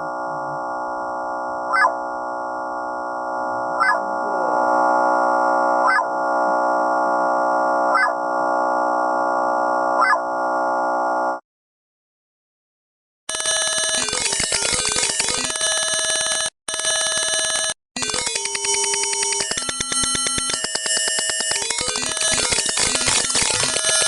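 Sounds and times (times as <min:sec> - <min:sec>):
swooping electronic chirp: 0:01.7 - 0:02.1, 0:03.6 - 0:04.2, 0:05.8 - 0:06.2, 0:07.9 - 0:08.2
electronic alert alarm tones: 0:03.1 - 0:10.4, 0:13.3 - 0:24.0.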